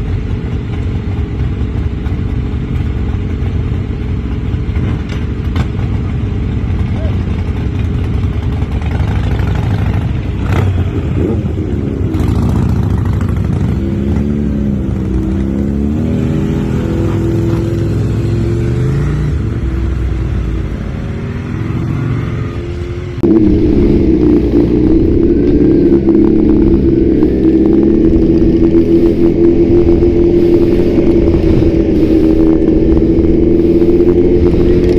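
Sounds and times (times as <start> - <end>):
motorcycle engine accelerating: 0.0 - 34.9
wind rush: 23.2 - 34.9.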